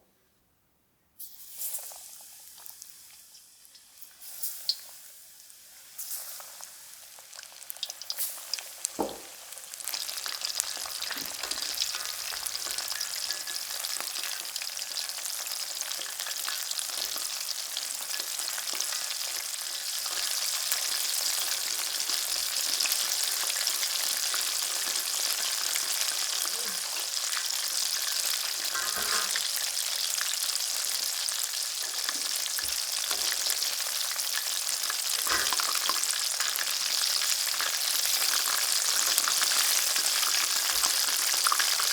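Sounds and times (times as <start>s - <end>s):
chicken sizzling in hot oil: 1.2s - 41.9s
brief knocks: 9.0s - 9.3s.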